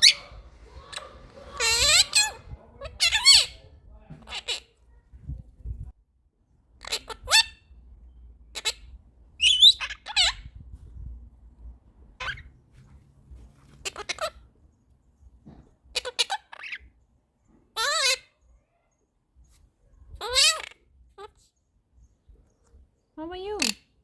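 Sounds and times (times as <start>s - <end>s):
parrot squawks and chirps: 0.0s - 4.8s, 6.8s - 7.8s, 8.4s - 10.6s, 12.2s - 12.6s, 13.6s - 14.5s, 15.9s - 17.0s, 17.7s - 18.4s, 20.1s - 21.4s.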